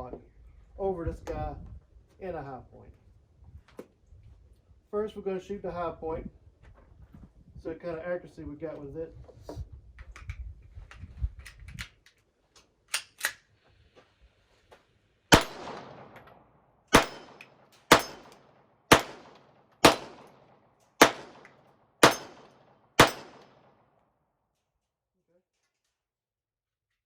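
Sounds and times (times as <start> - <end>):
pistol shots: 15.3 - 23.8.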